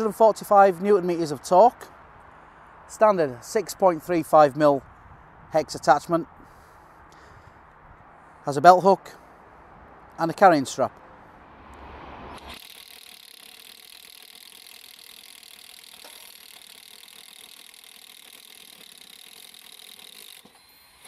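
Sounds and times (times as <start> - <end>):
cordless power tool running: 12.4 - 21.0.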